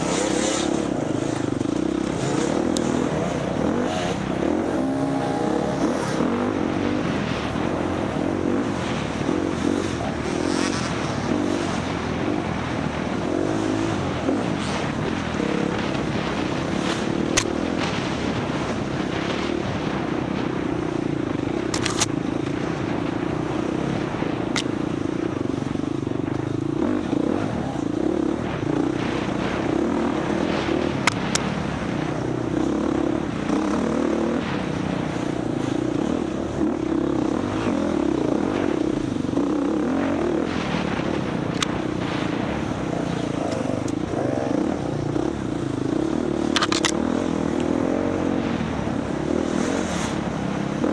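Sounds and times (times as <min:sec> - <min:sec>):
dirt bike engine revving: 0:00.0 - 0:50.9
sharp clicks and knocks: 0:21.7 - 0:22.1, 0:46.5 - 0:47.0.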